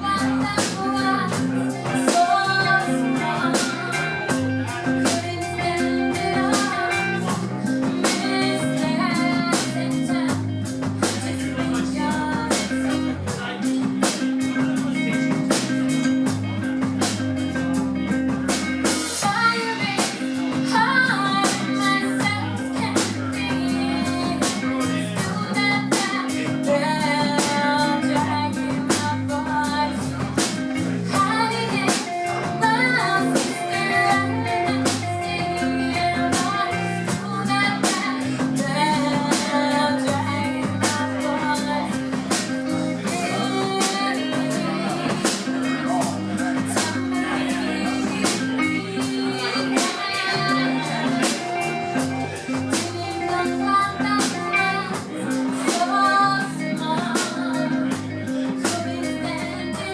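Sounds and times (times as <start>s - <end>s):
bass: 0.0s - 59.9s
drum kit beat: 0.0s - 59.9s
guitar: 0.0s - 59.9s
person singing: 0.0s - 59.9s.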